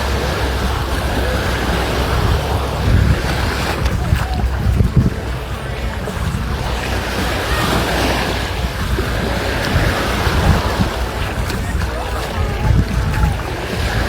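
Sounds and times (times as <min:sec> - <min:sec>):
sea surf washing onto beach: 0:00.0 - 0:14.0
wind rumbling on microphone: 0:00.0 - 0:14.0.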